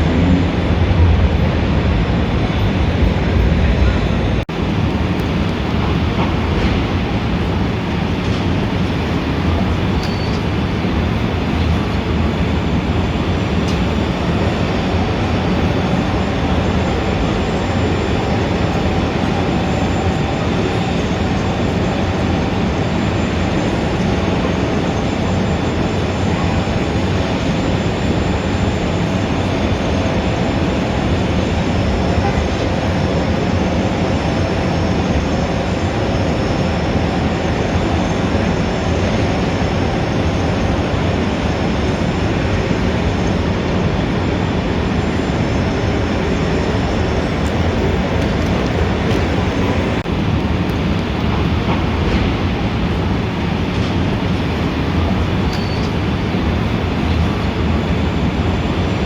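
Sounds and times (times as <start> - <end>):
city street traffic rumble: 0.0 - 59.0.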